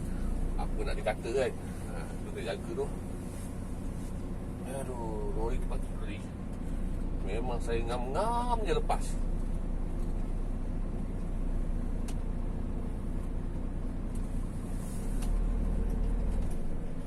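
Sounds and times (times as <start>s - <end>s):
lorry engine rumble: 0.0s - 17.0s
road noise: 0.0s - 17.0s.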